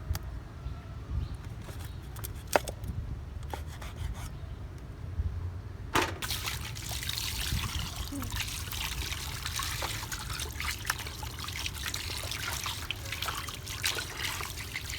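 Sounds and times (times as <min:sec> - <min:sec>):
knocks: 0:06.0 - 0:06.2
water trickling and pouring: 0:06.2 - 0:14.9.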